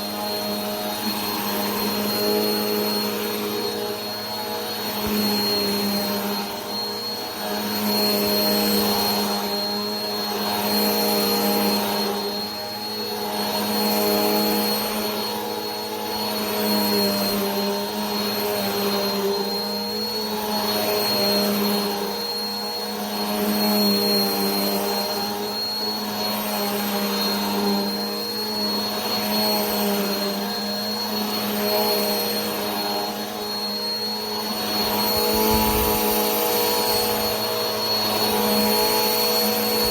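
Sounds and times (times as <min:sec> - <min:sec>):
vacuum cleaner motor running: 0:00.0 - 0:39.9.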